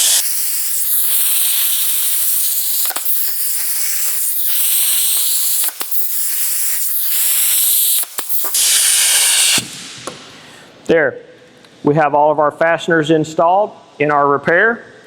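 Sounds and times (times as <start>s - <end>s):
rivet gun air hissing: 0.0s - 10.7s.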